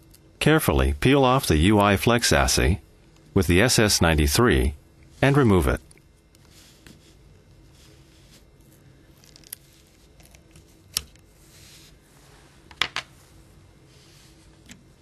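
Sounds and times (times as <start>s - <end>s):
peeling rustle: 6.3s - 12.0s.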